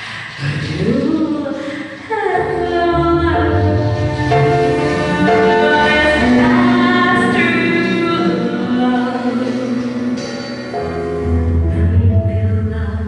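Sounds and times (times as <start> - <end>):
person singing long notes: 2.1 - 10.8
musical accompaniment: 2.3 - 13.0
deep low note: 2.4 - 13.0.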